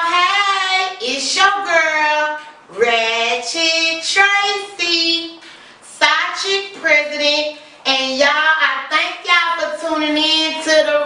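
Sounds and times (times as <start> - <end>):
high voice singing unaccompanied: 0.0 - 11.0.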